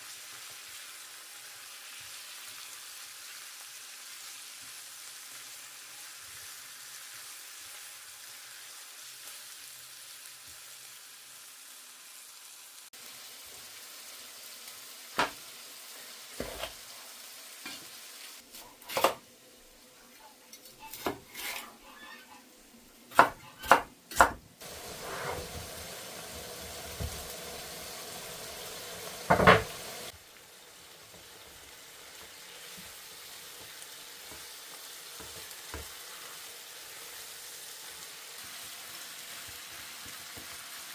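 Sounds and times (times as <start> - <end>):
food sizzling in oil: 0.0 - 19.2, 23.2 - 40.9
spatula scraping a pan: 20.7 - 22.5, 24.6 - 25.8.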